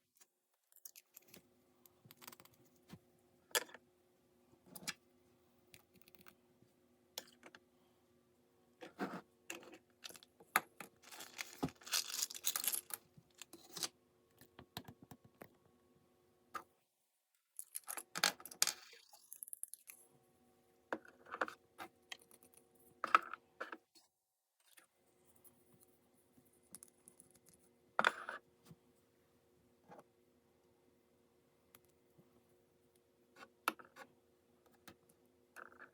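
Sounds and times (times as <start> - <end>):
packaging crinkling and tearing: 11.0 - 13.0.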